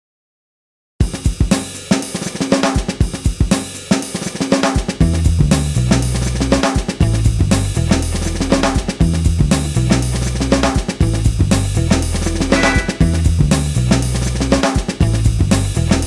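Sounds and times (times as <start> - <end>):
drum kit beat: 1.0 - 16.0
steady bass line: 5.0 - 16.0.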